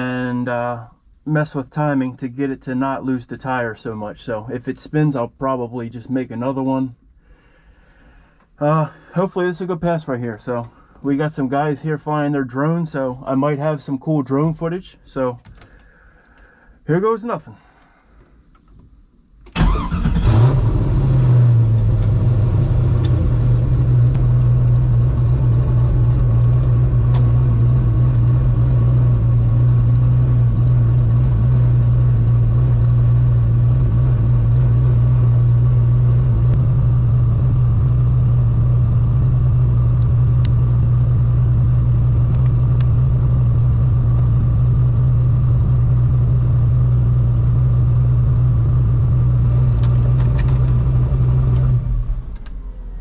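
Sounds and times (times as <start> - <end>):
car engine running steadily: 19.4 - 53.0.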